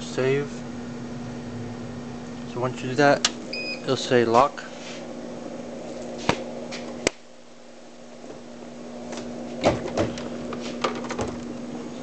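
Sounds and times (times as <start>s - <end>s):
faint steady hum: 0.0s - 12.0s
vending machine clicks and knocks: 10.8s - 11.4s.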